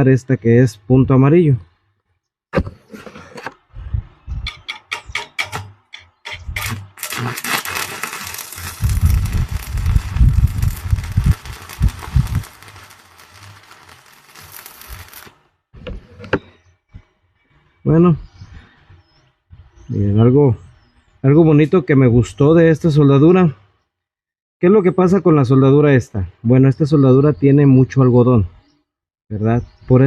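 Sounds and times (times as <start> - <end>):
welding rod taps and scratches: 4.5 - 15.3
welding arc crackling: 6.3 - 15.4.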